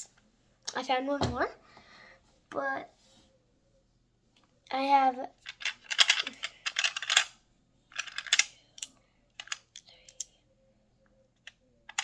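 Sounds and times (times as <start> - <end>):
fidget toys clattering: 5.4 - 10.2.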